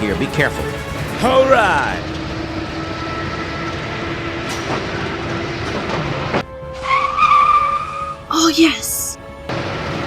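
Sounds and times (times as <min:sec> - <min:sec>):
machinery rattle and clatter: 0:00.0 - 0:06.5.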